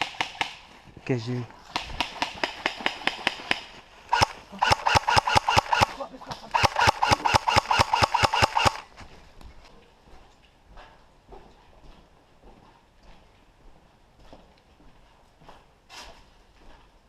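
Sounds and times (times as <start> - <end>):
airsoft gun rapid firing: 1.7 - 8.9.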